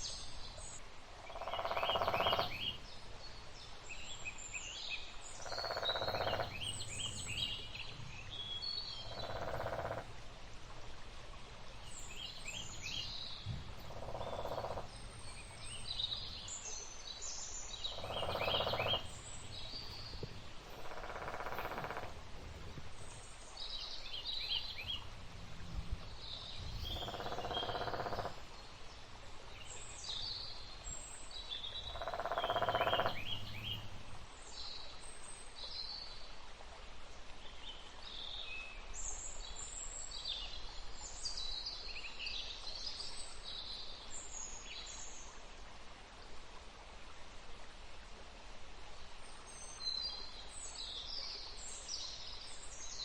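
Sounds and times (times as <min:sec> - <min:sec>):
small birds chirping: 0:00.0 - 0:03.4, 0:04.0 - 0:34.2
steady background hiss: 0:00.0 - 0:53.0.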